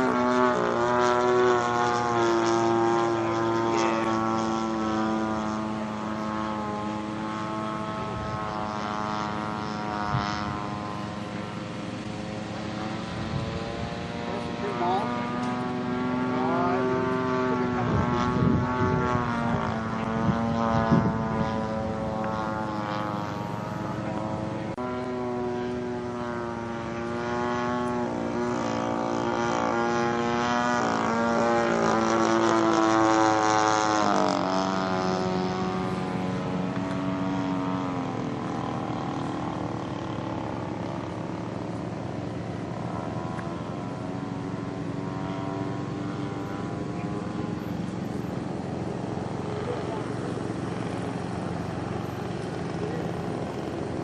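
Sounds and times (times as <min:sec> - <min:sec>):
wind buffeting microphone: 0:00.0 - 0:24.8
model plane engine: 0:00.0 - 0:54.0.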